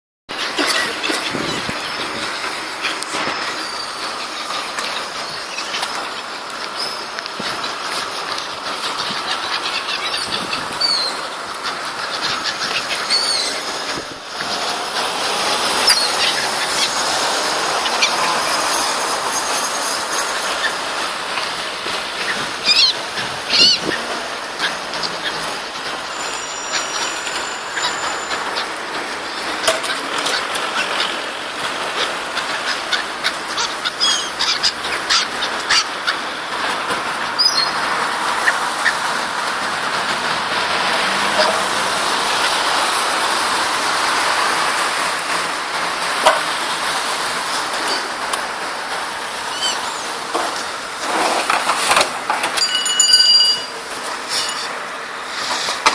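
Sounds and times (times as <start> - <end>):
city street noise: 0.3 - 55.9
tram wheels squealing: 0.3 - 55.9
small birds chirping: 0.4 - 13.7, 15.7 - 19.2, 22.2 - 25.6, 37.4 - 37.8.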